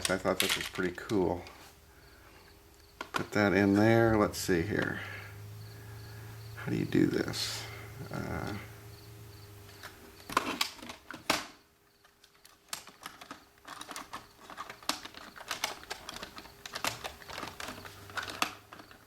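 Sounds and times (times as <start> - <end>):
plastic cassette clicks and rattles: 0.0 - 1.6, 3.0 - 3.3, 9.8 - 19.0
sharp plastic snaps: 0.0 - 1.6, 2.7 - 3.4, 9.7 - 19.0.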